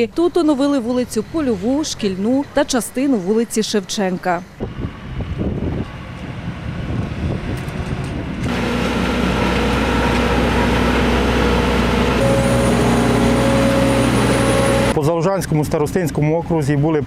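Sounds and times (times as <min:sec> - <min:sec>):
heavy machinery engine running: 0:08.4 - 0:15.0.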